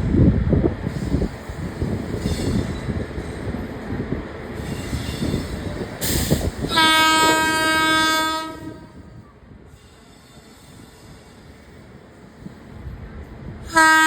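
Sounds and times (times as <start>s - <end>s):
train rumble: 0.0s - 14.0s
train horn blast: 6.6s - 9.2s, 13.7s - 14.0s.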